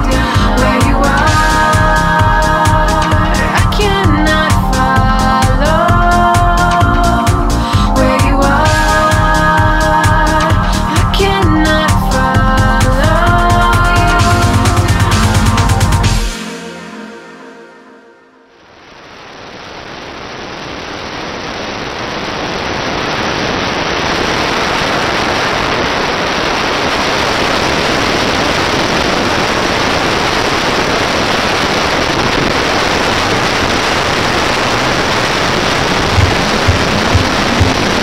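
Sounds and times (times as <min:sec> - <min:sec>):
low thumping music beat: 0:00.0 - 0:16.5, 0:36.0 - 0:38.0
steady rushing hiss: 0:00.0 - 0:16.5, 0:18.5 - 0:38.0.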